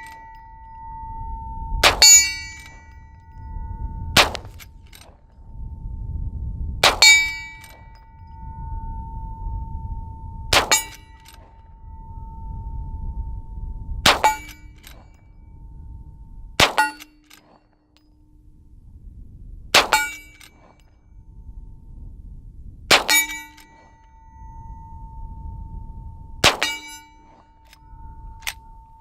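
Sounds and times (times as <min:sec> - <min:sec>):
bullet clanging on steel target: 0:00.0 - 0:00.8, 0:01.8 - 0:03.5, 0:04.2 - 0:05.3, 0:06.8 - 0:08.4, 0:10.5 - 0:11.6, 0:14.1 - 0:15.2, 0:16.6 - 0:18.1, 0:19.8 - 0:20.9, 0:22.9 - 0:24.2, 0:26.4 - 0:28.8
rifle shots: 0:01.8 - 0:02.7, 0:04.2 - 0:05.1, 0:06.8 - 0:07.8.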